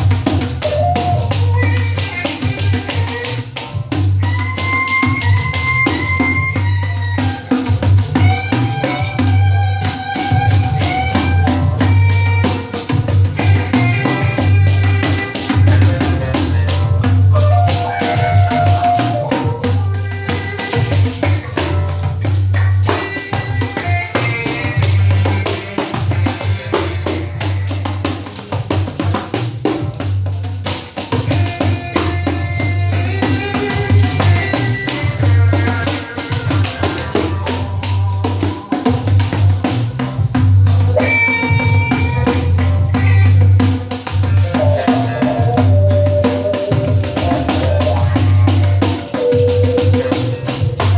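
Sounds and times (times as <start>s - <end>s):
recorded song: 0.0s - 50.9s
pandeiro with ringing jingles: 31.0s - 39.8s, 43.2s - 50.9s.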